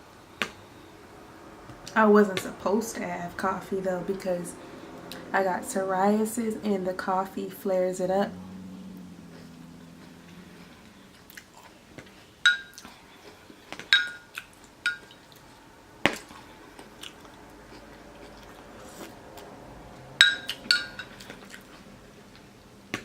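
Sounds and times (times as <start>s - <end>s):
person chewing: 9.0s - 19.5s, 20.4s - 22.5s
metal utensil clinking on dish: 13.9s - 14.2s, 20.2s - 21.2s.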